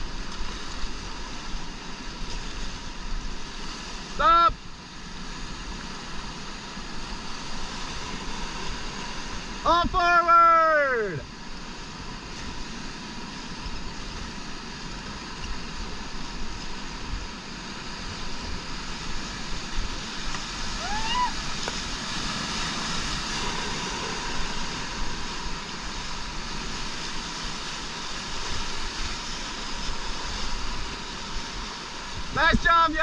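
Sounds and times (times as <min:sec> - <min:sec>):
whitewater rushing: 0:00.0 - 0:33.0
person shouting: 0:04.2 - 0:04.6, 0:09.7 - 0:11.2, 0:20.8 - 0:21.4.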